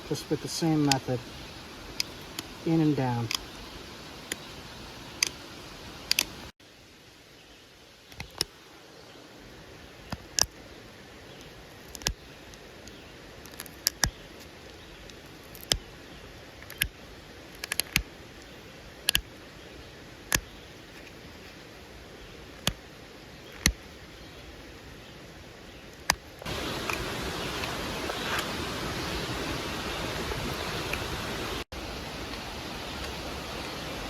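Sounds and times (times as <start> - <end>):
stone flakes clicking off: 11.7 - 15.8, 16.6 - 19.3.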